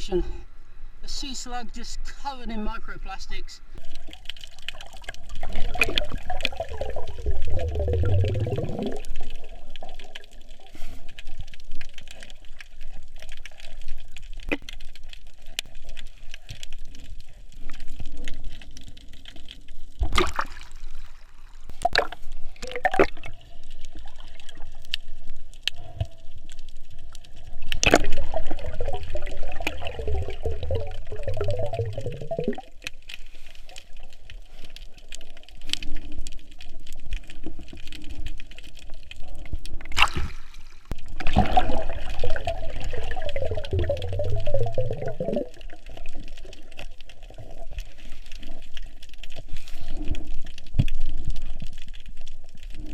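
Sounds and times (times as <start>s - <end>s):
underwater gurgling and bubbling: 3.8s - 16.6s, 21.8s - 33.4s, 35.8s - 52.9s
sharp clicks and crackles: 3.8s - 20.4s, 21.7s - 40.3s, 40.9s - 52.9s.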